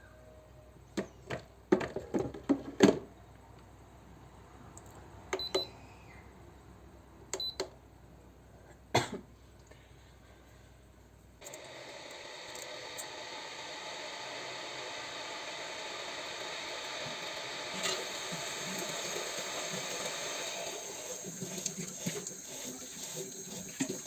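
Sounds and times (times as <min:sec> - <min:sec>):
water hissing: 0:13.8 - 0:24.0.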